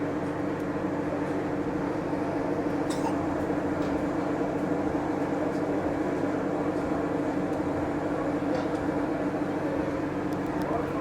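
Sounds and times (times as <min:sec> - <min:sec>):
store background hum: 0:00.0 - 0:11.0.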